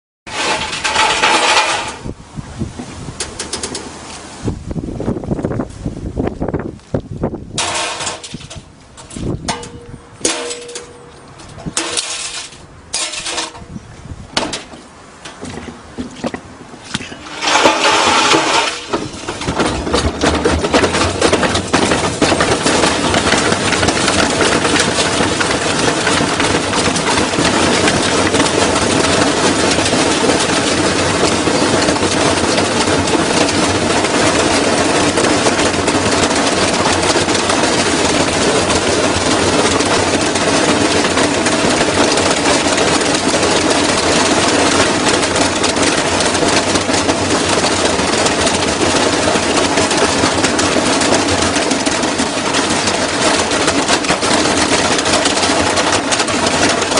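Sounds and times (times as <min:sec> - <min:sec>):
objects clattering in washing machine: 0:00.3 - 0:02.1, 0:07.6 - 0:13.8, 0:14.4 - 0:56.9
washing machine drone: 0:16.6 - 0:56.9.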